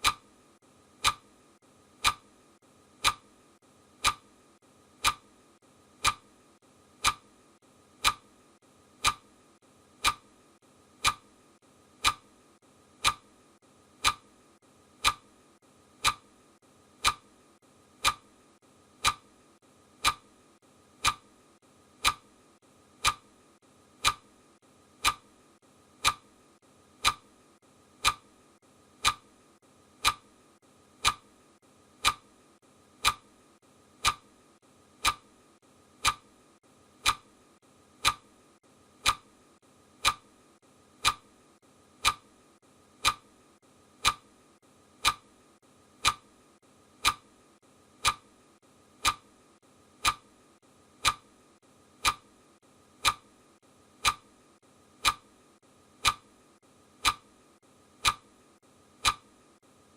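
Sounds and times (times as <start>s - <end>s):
clock ticking: 0.0s - 0.3s, 1.0s - 1.4s, 2.0s - 2.3s, 3.0s - 3.3s, 4.0s - 4.3s, 5.0s - 5.3s, 6.0s - 6.4s, 7.0s - 9.4s, 10.0s - 10.4s, 11.0s - 12.4s, 13.0s - 14.4s, 15.0s - 15.3s, 16.0s - 16.3s, 17.0s - 17.3s, 18.0s - 18.3s, 19.0s - 19.4s, 20.0s - 20.3s, 21.0s - 21.3s, 22.0s - 22.3s, 23.0s - 23.4s, 24.0s - 24.3s, 25.0s - 25.3s, 26.0s - 26.3s, 27.0s - 27.3s, 28.0s - 28.4s, 29.0s - 29.3s, 30.0s - 30.3s, 31.0s - 31.3s, 32.0s - 32.3s, 33.0s - 33.3s, 34.0s - 34.3s, 35.0s - 35.3s, 36.0s - 36.3s, 37.0s - 37.4s, 38.0s - 38.3s, 39.0s - 39.3s, 40.0s - 40.3s, 41.0s - 41.3s, 42.0s - 42.3s, 43.0s - 43.3s, 44.0s - 44.3s, 45.0s - 45.3s, 46.0s - 46.3s, 47.0s - 47.3s, 48.0s - 48.3s, 49.0s - 49.3s, 50.0s - 50.3s, 51.0s - 51.3s, 52.0s - 52.3s, 53.0s - 53.3s, 54.0s - 54.3s, 55.0s - 55.3s, 56.0s - 56.3s, 57.0s - 57.3s, 58.0s - 58.3s, 59.0s - 59.3s.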